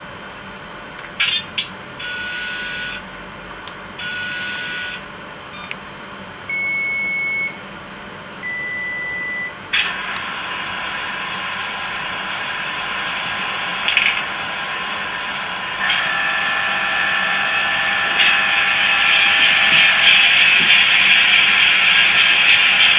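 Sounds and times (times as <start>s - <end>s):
model train running: 9.7s - 22.9s.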